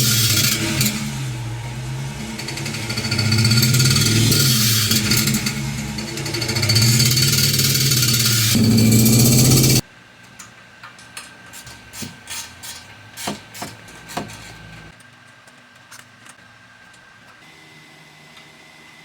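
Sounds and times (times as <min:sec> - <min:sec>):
hand tool knocks and scrapes: 0:11.2 - 0:14.9.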